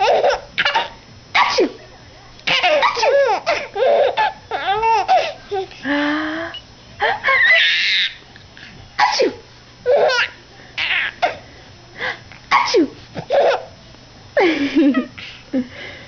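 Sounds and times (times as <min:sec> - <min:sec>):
adult fake sneezing: 0:00.6 - 0:01.8, 0:09.0 - 0:09.4, 0:12.5 - 0:13.6
baby laughing and squealing: 0:07.0 - 0:08.2, 0:09.9 - 0:11.4.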